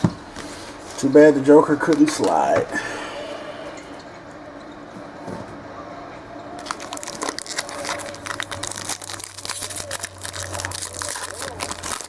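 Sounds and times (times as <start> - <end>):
wrapper crinkling and tearing: 6.6 - 12.0.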